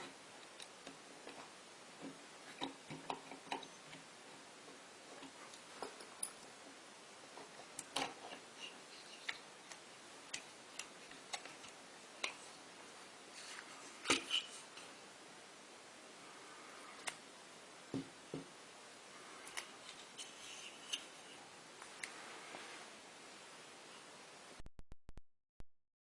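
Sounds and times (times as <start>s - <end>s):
small tools clicking and tapping: 2.6s - 4.0s.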